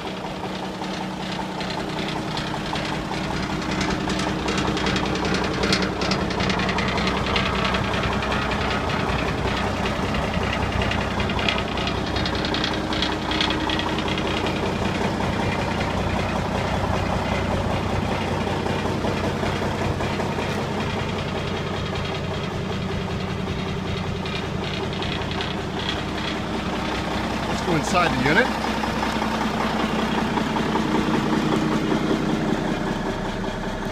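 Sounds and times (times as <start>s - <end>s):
diesel truck engine idling: 0.0s - 33.9s.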